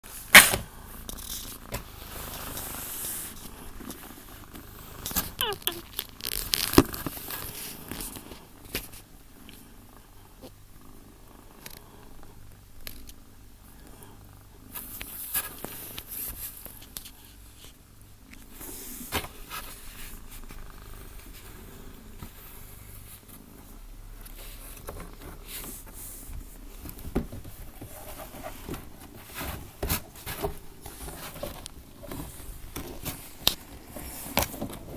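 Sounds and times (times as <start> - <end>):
cat purring: 0.1 - 17.7, 18.3 - 34.9
sharp clicks and rustles: 3.4 - 9.0.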